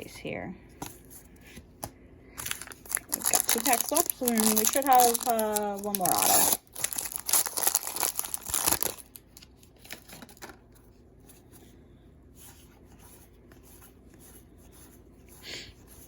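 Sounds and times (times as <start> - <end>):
foil wrapper rustling: 2.4 - 10.6.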